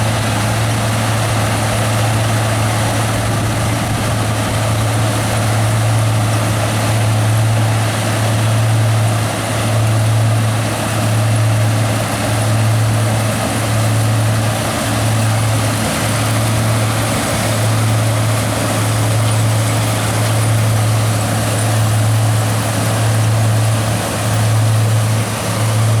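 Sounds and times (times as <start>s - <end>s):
harvester machinery running: 0.0s - 26.0s
tractor diesel engine under load: 0.0s - 26.0s.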